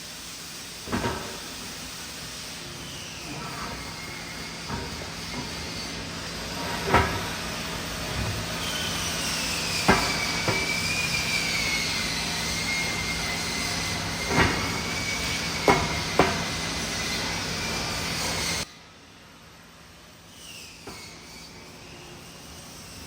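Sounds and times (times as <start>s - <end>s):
metal knocks on steel tank: 6.6s - 7.4s, 9.8s - 10.8s.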